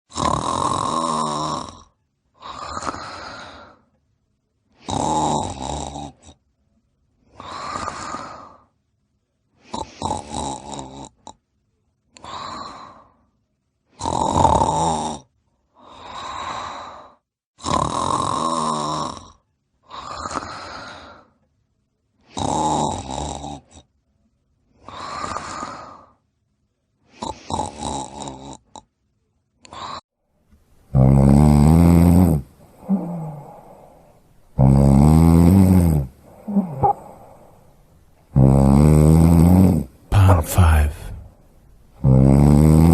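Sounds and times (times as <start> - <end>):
person snoring: 0.1 - 3.8, 4.8 - 6.3, 7.3 - 8.6, 15.8 - 21.2, 22.3 - 23.8, 24.8 - 26.1, 30.9 - 41.4, 42.0 - 42.9.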